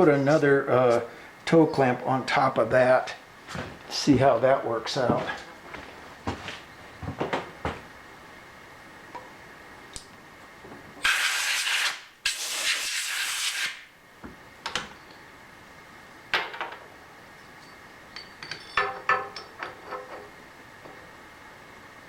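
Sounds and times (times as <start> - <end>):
loud hissing blasts: 11.0 - 13.9
metal clinks and clanks: 17.6 - 20.1.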